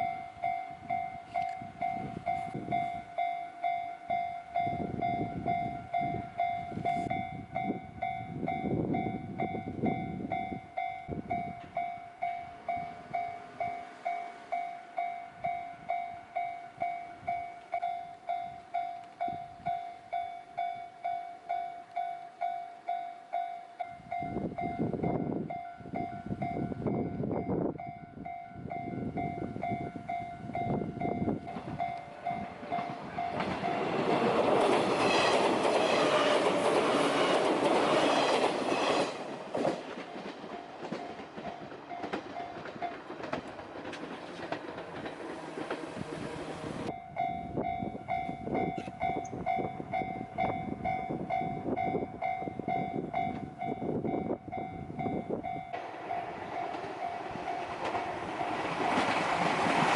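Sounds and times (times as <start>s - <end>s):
level-crossing warning bell ringing: 0.0s - 59.9s
train wheels clattering: 31.4s - 47.0s, 55.6s - 59.9s.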